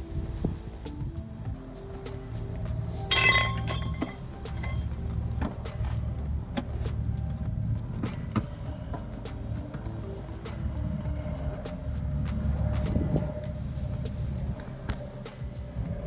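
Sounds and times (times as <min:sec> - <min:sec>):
steady low hum: 0:00.0 - 0:16.0
loud metallic clank: 0:03.1 - 0:04.8.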